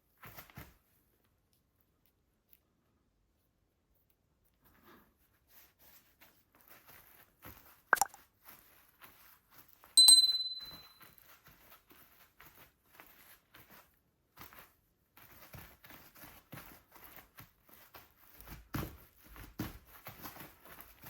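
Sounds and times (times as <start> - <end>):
loud bright ding: 10.0 - 11.0.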